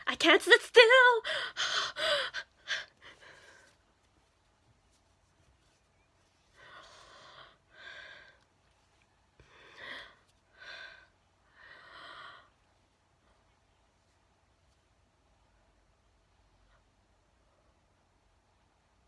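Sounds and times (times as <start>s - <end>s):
person breathing heavily: 1.2s - 3.8s, 6.5s - 8.4s, 9.4s - 12.6s.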